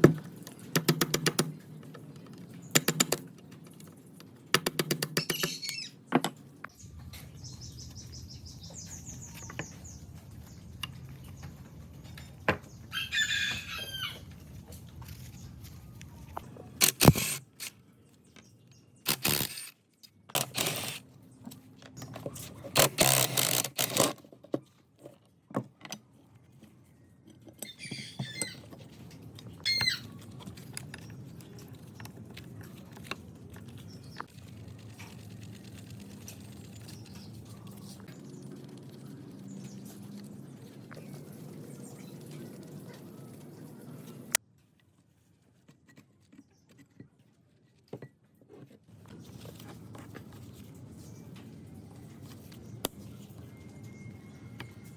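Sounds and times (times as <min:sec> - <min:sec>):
short high squeaks: 0:29.6 - 0:30.2.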